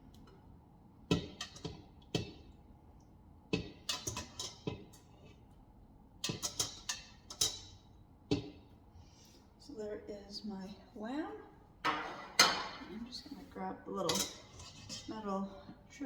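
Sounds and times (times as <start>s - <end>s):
utensil clinking on metal pot: 3.5s - 5.1s, 6.2s - 8.6s, 14.0s - 15.4s.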